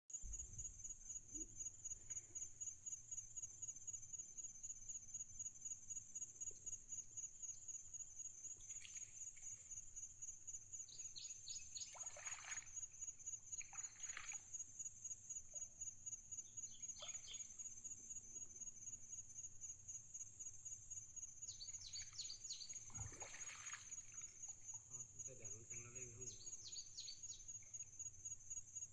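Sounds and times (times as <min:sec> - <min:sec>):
high-pitched insect trill: 0:00.2 - 0:28.9
birds calling: 0:16.7 - 0:17.6.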